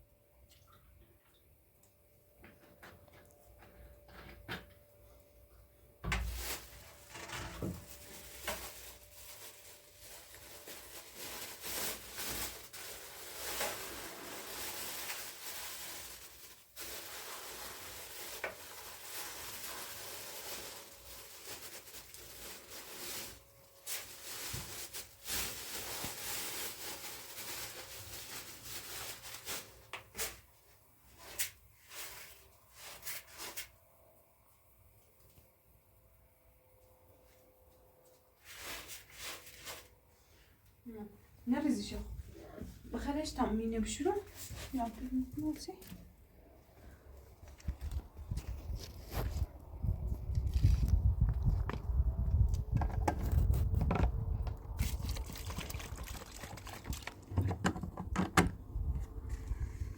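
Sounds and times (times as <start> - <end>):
rustling and rubbing: 6.2 - 33.8, 38.3 - 40.0, 42.0 - 59.9.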